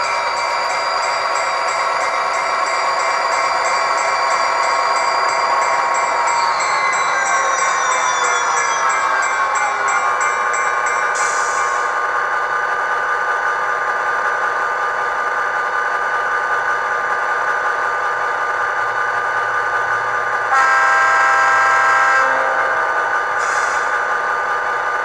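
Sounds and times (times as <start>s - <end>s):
air horn blast: 20.5s - 22.8s.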